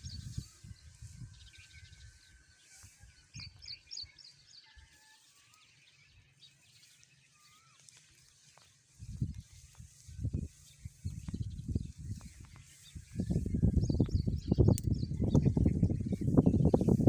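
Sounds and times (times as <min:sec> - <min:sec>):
small birds chirping: 0:00.0 - 0:17.0
thin bird whistles: 0:07.3 - 0:07.9.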